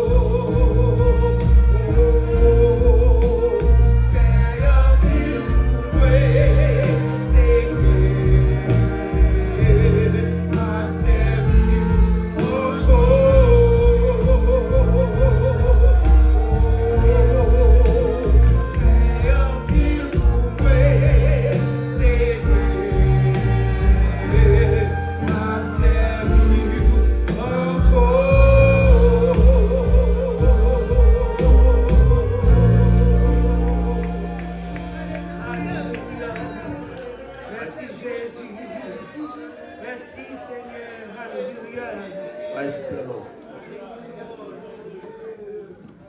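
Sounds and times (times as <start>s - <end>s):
bass and instrumental accompaniment: 0.0s - 37.5s
person singing with vibrato: 0.0s - 37.5s.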